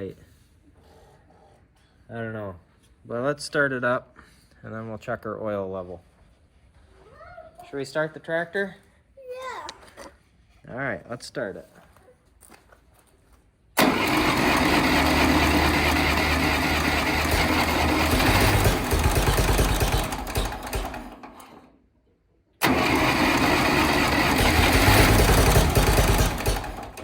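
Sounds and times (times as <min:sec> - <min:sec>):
engine starting and running: 0:13.8 - 0:21.8, 0:22.6 - 0:27.0.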